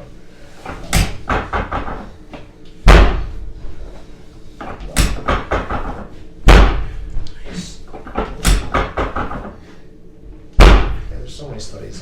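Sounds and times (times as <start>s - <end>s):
thuds on treatment table: 4.8s - 5.9s, 10.6s - 11.0s.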